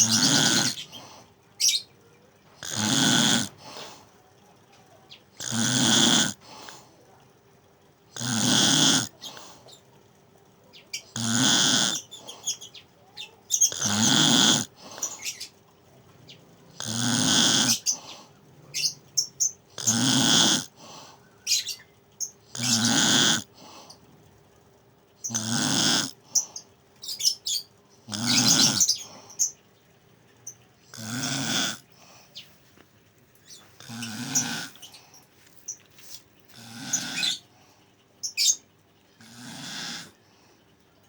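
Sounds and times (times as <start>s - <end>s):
person snoring: 0.0s - 0.9s, 2.6s - 3.9s, 5.4s - 6.5s, 8.2s - 9.4s, 11.1s - 12.0s, 13.7s - 15.0s, 16.8s - 18.0s, 19.8s - 21.0s, 22.5s - 23.6s, 25.3s - 26.2s, 28.1s - 29.0s, 30.9s - 32.1s, 33.8s - 35.0s, 36.5s - 37.4s, 39.2s - 40.2s
faint steady hum: 0.0s - 41.0s.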